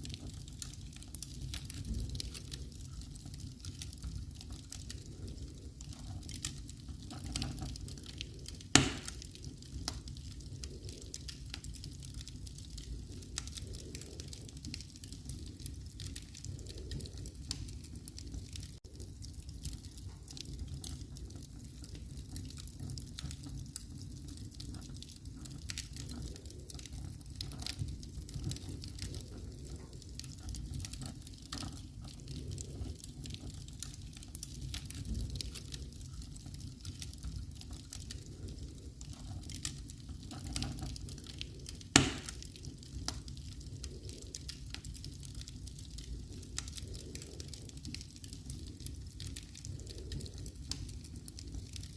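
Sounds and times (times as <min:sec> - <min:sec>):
wood fire crackling: 0:00.0 - 0:51.9
sharp loud pop: 0:08.8 - 0:09.1, 0:42.0 - 0:42.3.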